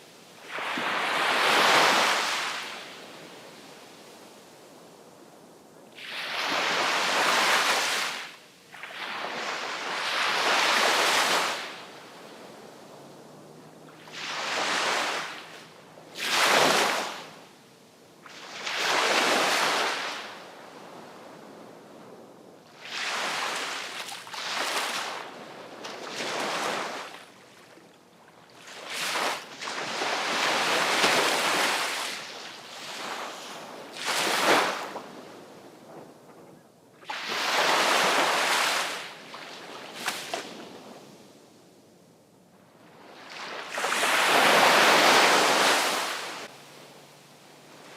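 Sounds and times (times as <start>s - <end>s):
sea waves breaking: 6.0s - 17.5s, 22.8s - 27.8s, 28.6s - 35.2s, 37.1s - 40.9s, 43.0s - 47.9s.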